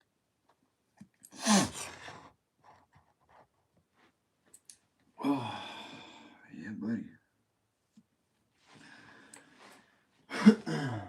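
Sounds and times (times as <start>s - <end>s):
person sighing: 1.3s - 2.2s, 5.2s - 6.4s, 10.3s - 11.0s.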